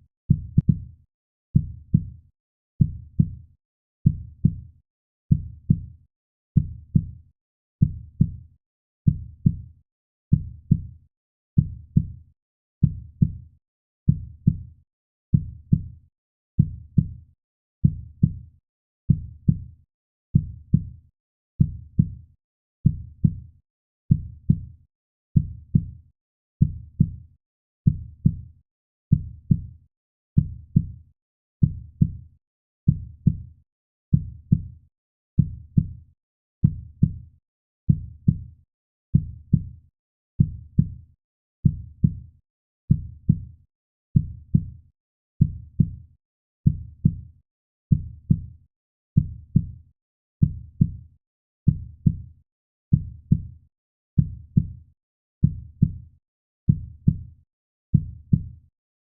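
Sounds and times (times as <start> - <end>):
heartbeat: 32.9 - 33.4, 47.9 - 48.4, 50.4 - 51.0, 51.7 - 52.2, 55.4 - 55.9.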